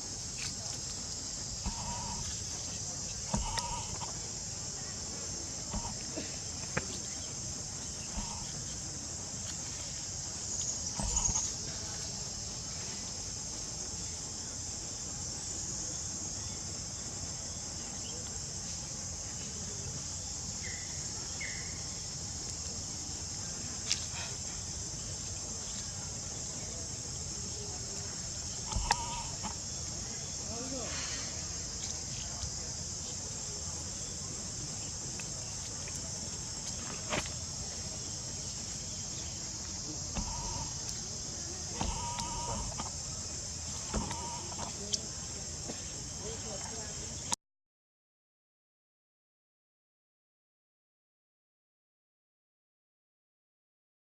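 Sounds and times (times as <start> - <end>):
high-pitched insect drone: 1.1 - 6.1, 9.7 - 14.2, 19.4 - 47.1.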